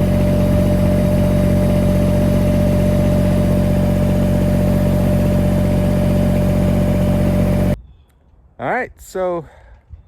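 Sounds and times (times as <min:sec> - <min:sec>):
tractor engine idling: 0:00.0 - 0:07.8.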